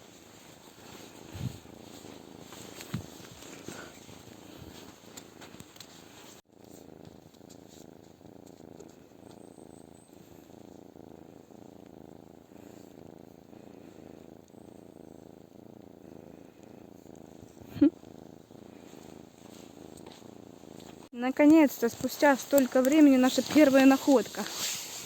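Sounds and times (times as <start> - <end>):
cat purring: 0.0 - 25.0.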